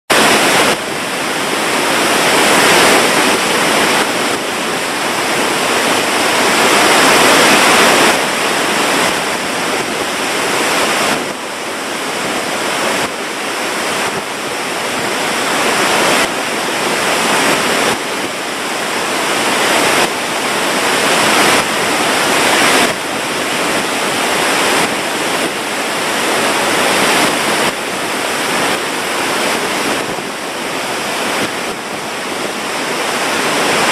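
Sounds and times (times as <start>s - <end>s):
waterfall rushing: 0.1s - 33.9s.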